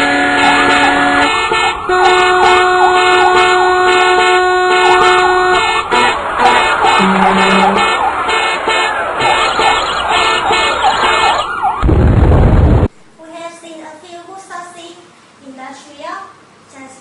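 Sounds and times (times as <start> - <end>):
vehicle horns blaring: 0.0 - 11.4
street traffic: 0.0 - 12.0.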